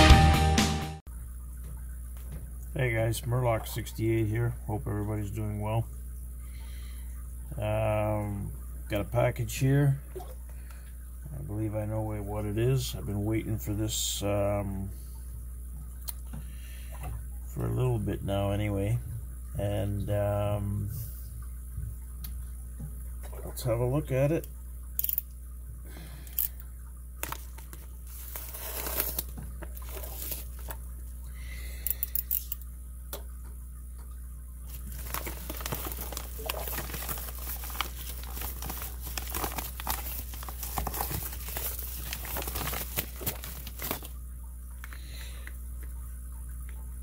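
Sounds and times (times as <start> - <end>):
steady low hum: 1.1 - 47.0
packaging tearing and crinkling: 27.2 - 30.7, 34.7 - 44.2
clicks and rustles: 34.7 - 44.2.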